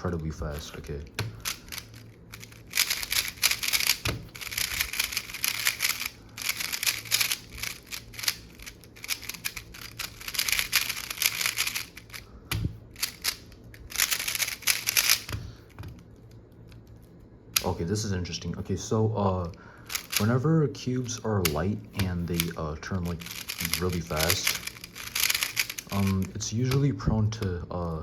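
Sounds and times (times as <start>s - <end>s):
plastic puzzle cube clacking: 0.5s - 15.4s, 19.9s - 20.4s, 21.4s - 26.9s.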